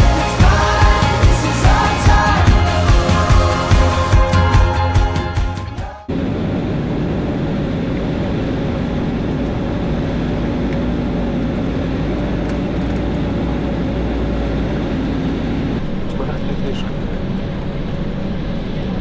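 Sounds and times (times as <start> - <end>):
vehicle rumbling in motion: 6.1 - 19.0.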